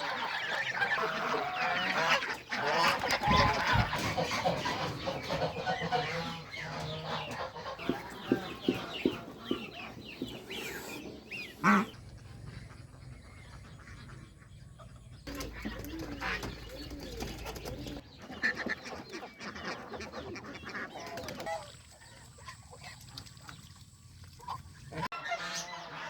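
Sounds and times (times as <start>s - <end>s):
geese honking: 0.0s - 22.9s, 24.4s - 26.0s
chickens clucking: 0.0s - 26.0s.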